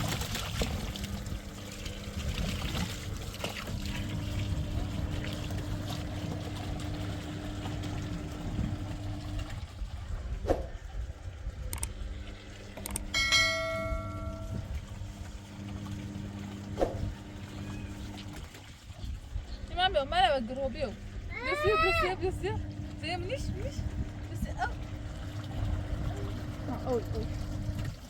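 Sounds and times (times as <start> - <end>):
steady low hum: 0.0 - 28.0
bell-like strike on metal: 13.1 - 14.8.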